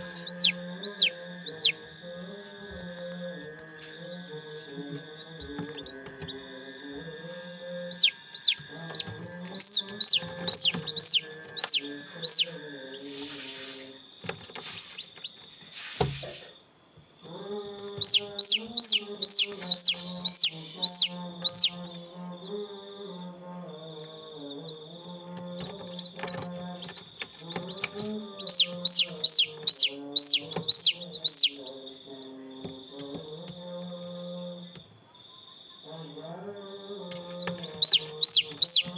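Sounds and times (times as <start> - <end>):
chicks peeping: 0.0 - 1.9, 4.8 - 6.6, 7.7 - 16.3, 17.7 - 22.6, 24.4 - 33.2, 37.1 - 38.9.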